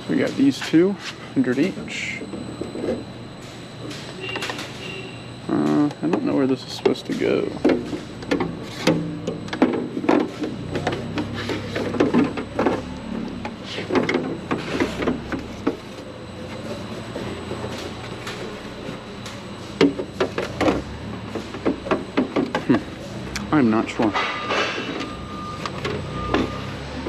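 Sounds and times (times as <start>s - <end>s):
steady low hum: 0.0s - 27.0s
items knocking and clattering: 6.0s - 16.0s, 19.8s - 22.8s.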